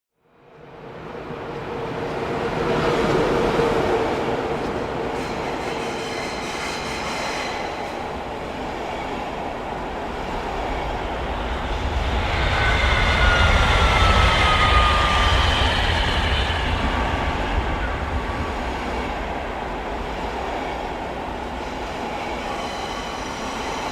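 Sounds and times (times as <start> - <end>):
train rumbling on rails: 0.3 - 23.9
falling train whine: 0.4 - 23.9.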